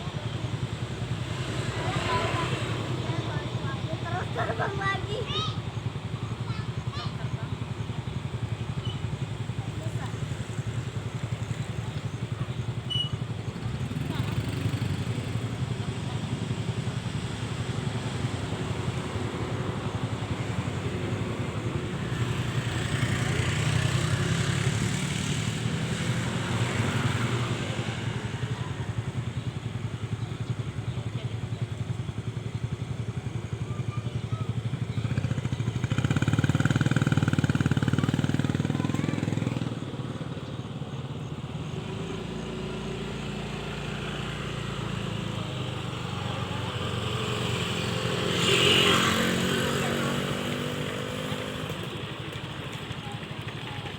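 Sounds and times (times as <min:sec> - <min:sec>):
engine rumble: 0:00.0 - 0:53.9.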